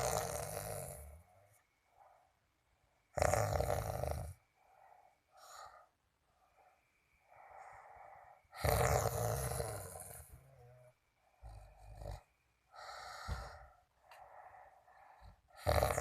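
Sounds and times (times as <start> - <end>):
person snoring: 0.0 - 1.3, 3.1 - 4.4, 7.8 - 13.7, 14.7 - 16.0
quiet breaths: 0.0 - 16.0.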